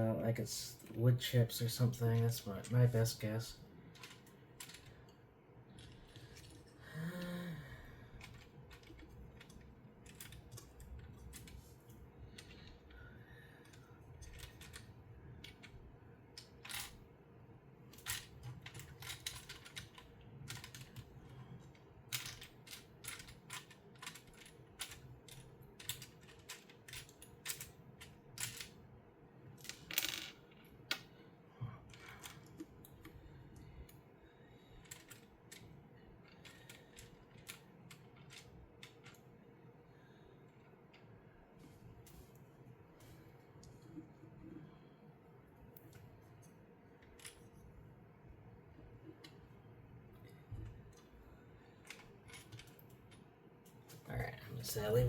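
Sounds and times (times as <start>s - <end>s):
plastic lego pieces clicking: 18.0s - 21.0s, 22.1s - 28.7s.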